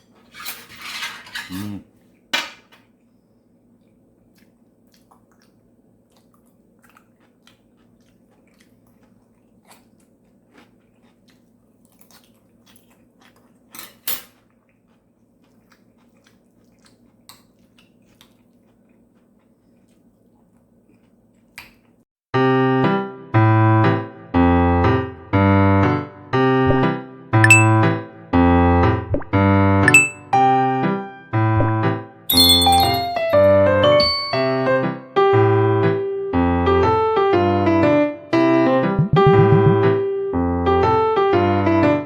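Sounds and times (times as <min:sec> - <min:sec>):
soft chewing: 0:02.9 - 0:22.1.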